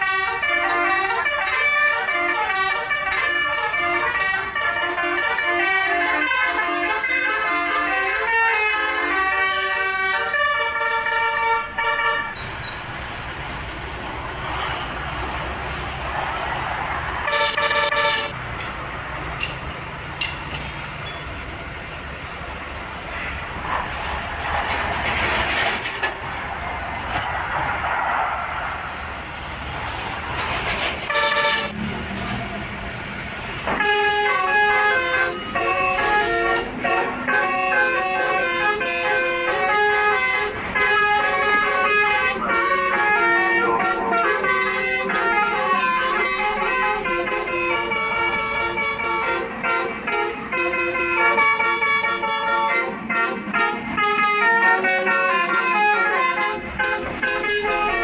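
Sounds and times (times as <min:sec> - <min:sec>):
bus musical horn tune: 0:00.0 - 0:12.6, 0:17.2 - 0:18.4, 0:31.1 - 0:31.8, 0:33.7 - 0:58.0
short horn blasts: 0:17.2 - 0:18.4, 0:31.1 - 0:31.8.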